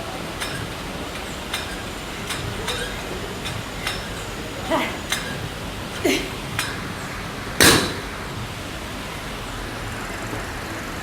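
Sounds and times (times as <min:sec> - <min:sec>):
loud metal clank ringing: 0:00.0 - 0:08.3.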